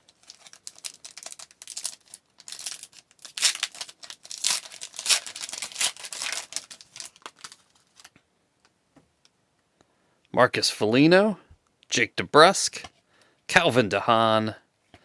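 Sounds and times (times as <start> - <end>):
wrapper tearing and crinkling: 0.0 - 8.2.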